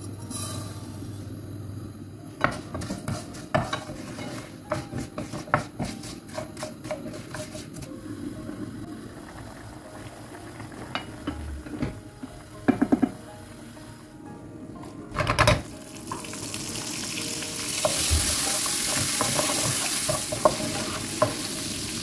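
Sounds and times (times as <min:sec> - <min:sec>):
metal spoon stirring in a pot: 0:02.4 - 0:07.9, 0:17.8 - 0:21.5.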